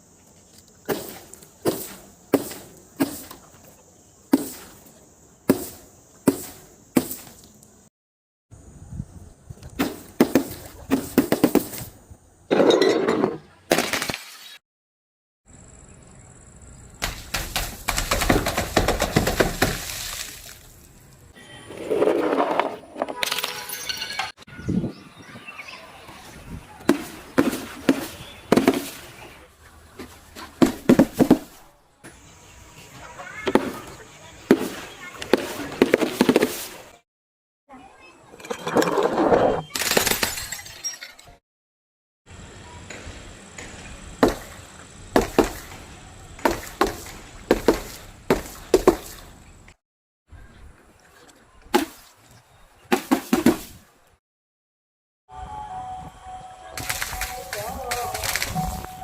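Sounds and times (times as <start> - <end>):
sharp blows crushing objects: 0.8 - 3.4, 5.5 - 7.4, 9.8 - 11.9, 17.0 - 20.6, 26.8 - 29.1, 30.6 - 31.6, 43.6 - 44.5, 45.2 - 45.8, 46.4 - 49.3, 52.9 - 53.8
objects cracking and crunching: 56.8 - 58.8.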